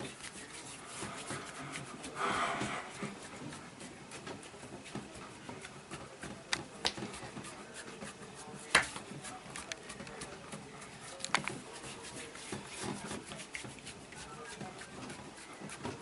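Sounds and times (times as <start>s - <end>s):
rubbing of body massage: 0.0s - 16.0s
breathy exhale: 1.2s - 3.1s.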